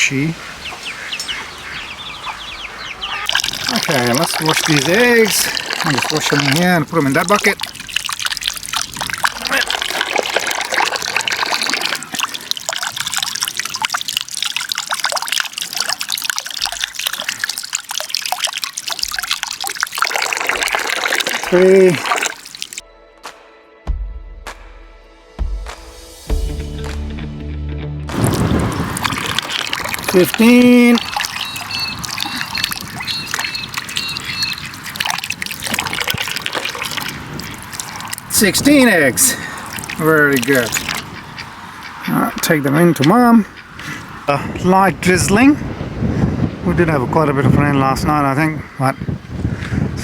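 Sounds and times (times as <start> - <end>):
water running and trickling: 0.0 - 22.8, 28.1 - 43.4
short high chirps: 31.0 - 34.7.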